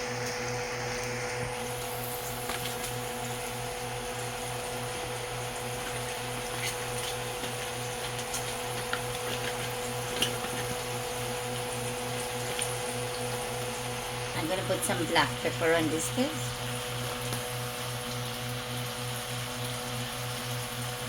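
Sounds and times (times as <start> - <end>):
machine hum with low pulsing: 0.0 - 21.0.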